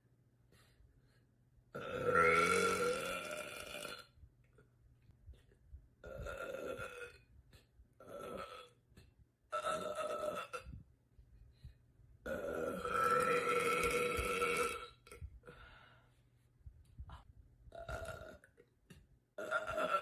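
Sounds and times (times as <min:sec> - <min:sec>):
woman belching: 0:12.3 - 0:15.0, 0:17.7 - 0:18.5, 0:19.4 - 0:20.0.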